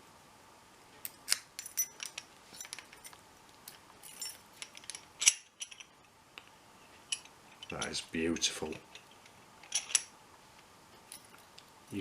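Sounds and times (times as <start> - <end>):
padlock clicking and clinking: 8.8 - 10.1.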